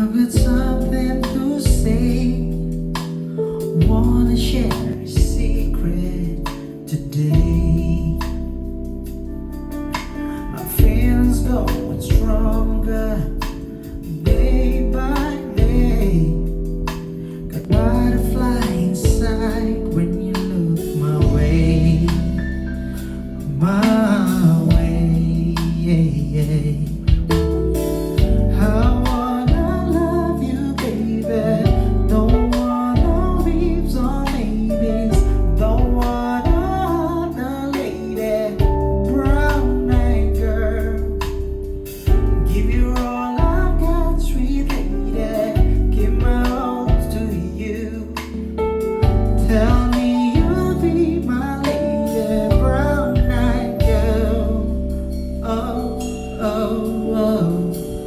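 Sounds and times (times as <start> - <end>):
song with heavy bass: 0.0 - 58.0.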